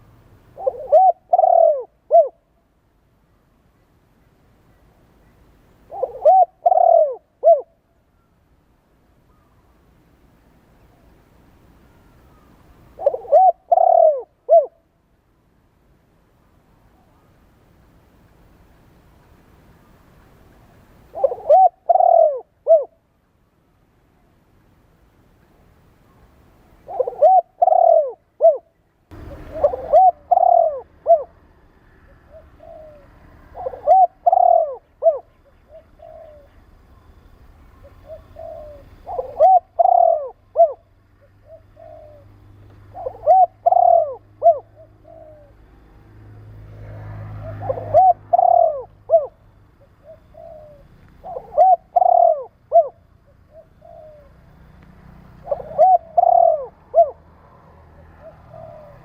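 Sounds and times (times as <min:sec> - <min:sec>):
dove cooing: 0:00.0 - 0:02.6, 0:05.8 - 0:07.9, 0:12.2 - 0:14.9, 0:21.0 - 0:23.0, 0:26.8 - 0:59.0.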